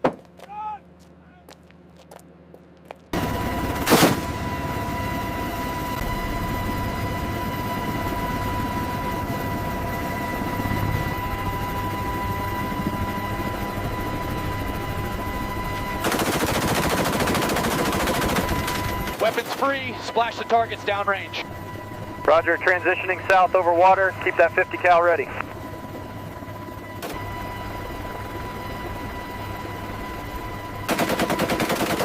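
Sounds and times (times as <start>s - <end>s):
steady high tone: 18.3s - 30.8s.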